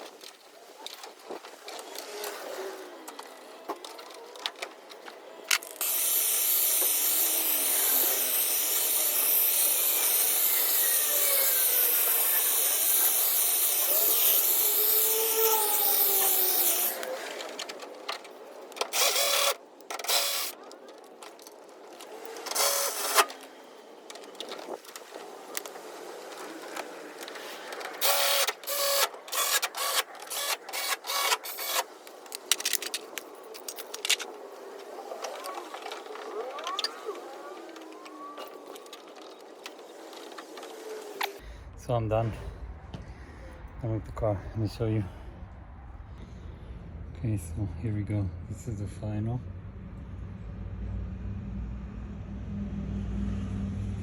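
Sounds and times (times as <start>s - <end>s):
small electric tool running: 5.5s - 17.4s, 18.9s - 20.6s, 22.1s - 23.4s, 28.0s - 31.9s.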